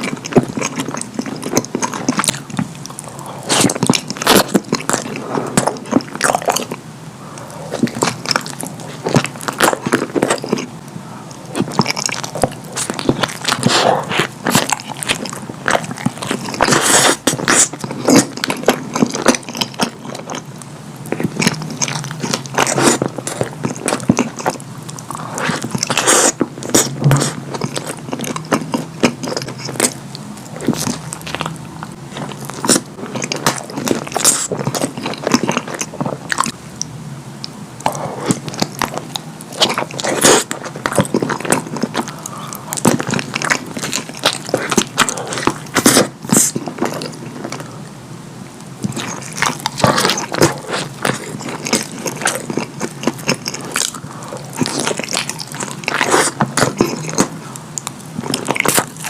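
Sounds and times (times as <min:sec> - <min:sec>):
person chewing food: 0:00.0 - 0:59.0
mouth clicks and smacks: 0:21.1 - 0:47.7.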